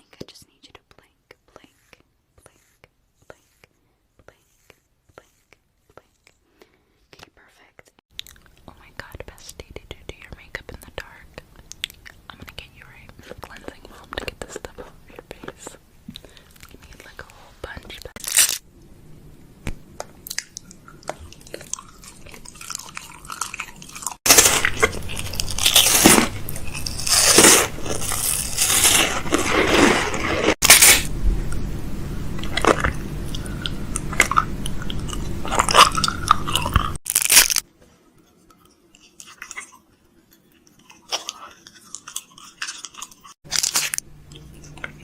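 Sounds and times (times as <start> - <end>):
wet mouth sounds: 20.2 - 29.6, 32.4 - 37.6.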